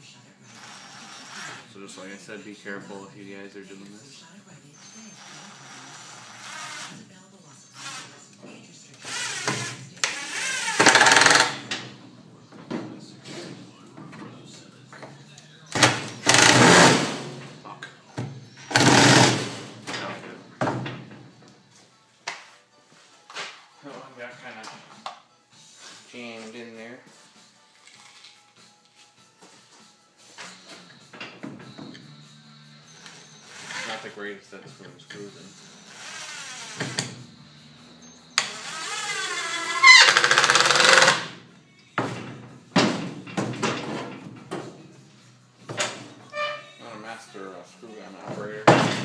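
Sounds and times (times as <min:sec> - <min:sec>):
screw gun driving screws into wood: 0:10.3 - 0:11.6, 0:16.2 - 0:17.0, 0:18.7 - 0:19.5, 0:40.0 - 0:41.3.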